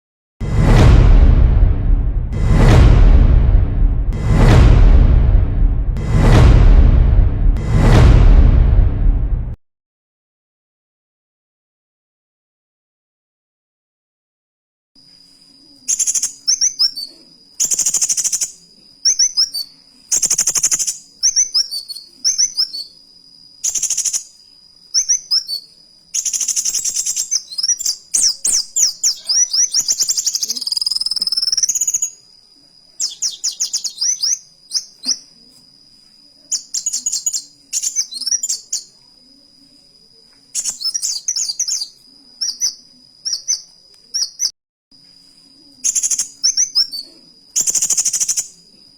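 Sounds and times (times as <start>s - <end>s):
sunbird chirps and trills: 15.7s - 23.0s, 23.6s - 32.2s, 33.0s - 35.4s, 36.5s - 39.0s, 40.5s - 44.5s, 45.8s - 48.5s.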